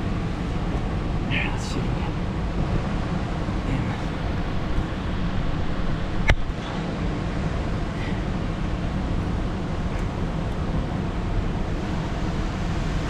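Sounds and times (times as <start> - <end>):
wind rumbling on microphone: 0.0 - 13.0.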